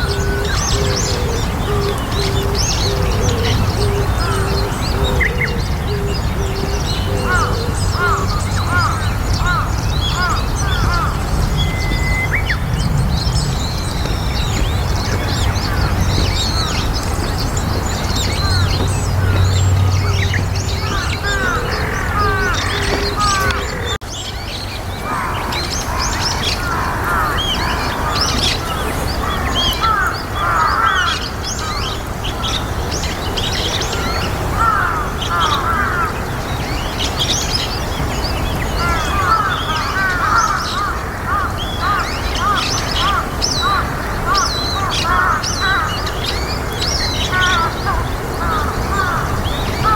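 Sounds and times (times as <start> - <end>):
birds chirping: 0.0 - 49.9.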